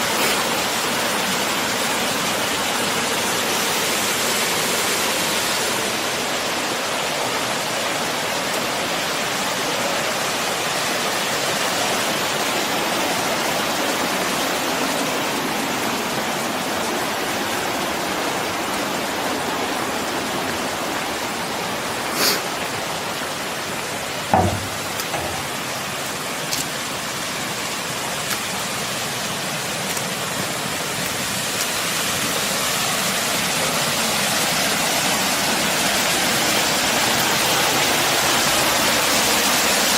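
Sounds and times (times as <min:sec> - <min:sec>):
flowing mountain water: 0:00.0 - 0:39.9
brief knocks: 0:24.3 - 0:25.7.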